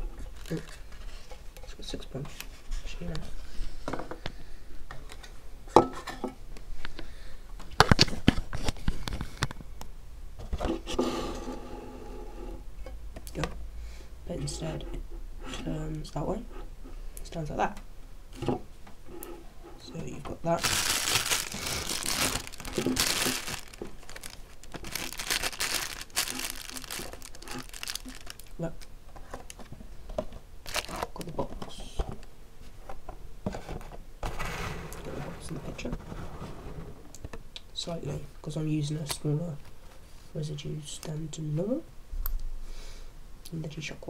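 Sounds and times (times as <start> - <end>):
packaging crinkling: 0.2 - 1.0, 20.5 - 28.9, 30.6 - 31.3.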